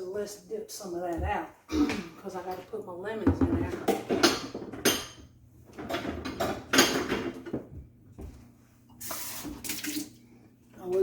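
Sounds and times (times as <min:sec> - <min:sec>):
dishes and utensils clattering: 0:03.2 - 0:07.7.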